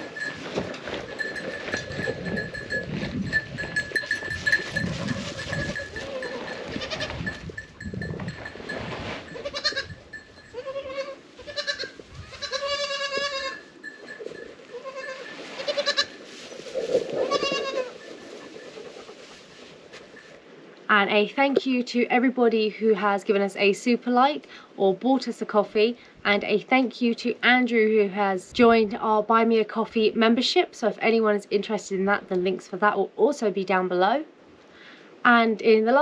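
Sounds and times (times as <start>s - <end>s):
goats bleating: 5.1s - 7.3s, 10.6s - 13.7s, 14.7s - 16.2s, 17.3s - 18.0s.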